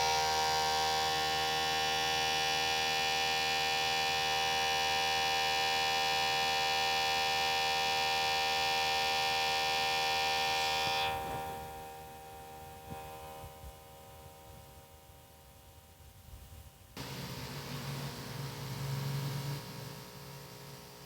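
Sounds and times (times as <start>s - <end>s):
disc drive whirring: 17.0s - 21.0s.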